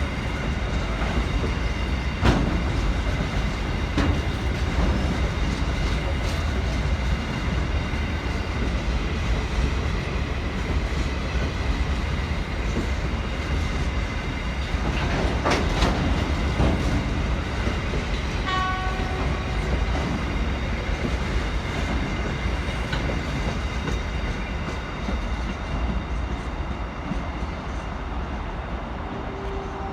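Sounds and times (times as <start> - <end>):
train wheels rumbling on rails: 0.0 - 29.9
clattering over rail joints: 0.7 - 7.0.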